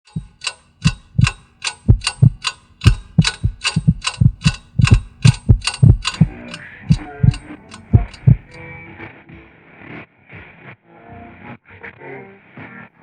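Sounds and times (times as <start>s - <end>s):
metallic ringing ticks: 0.0s - 8.7s
deep thuds: 0.1s - 8.6s.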